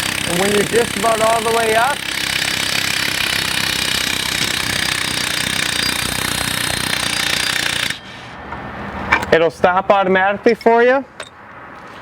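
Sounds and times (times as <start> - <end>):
cordless drill running under load: 0.0 - 8.0.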